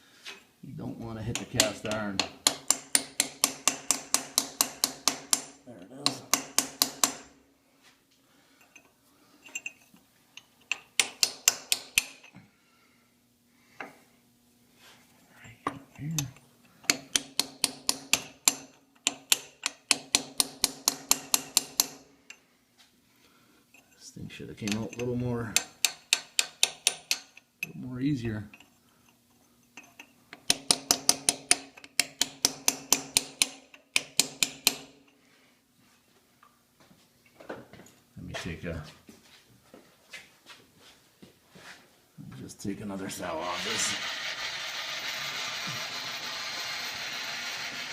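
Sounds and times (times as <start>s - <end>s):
hammer striking metal chisel: 1.3s - 7.4s, 10.4s - 12.4s, 15.7s - 22.4s, 24.6s - 27.8s, 29.8s - 35.2s.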